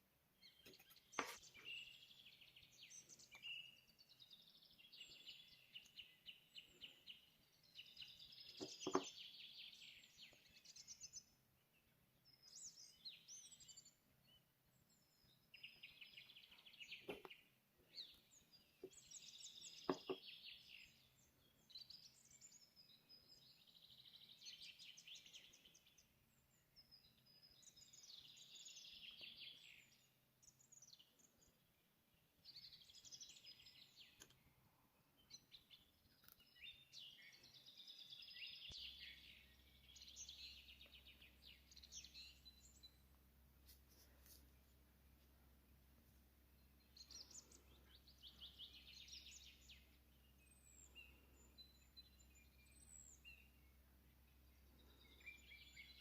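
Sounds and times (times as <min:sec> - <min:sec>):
songbird singing trilled phrases: 0:00.4 - 0:11.4, 0:35.2 - 0:43.1, 0:46.6 - 0:56.0.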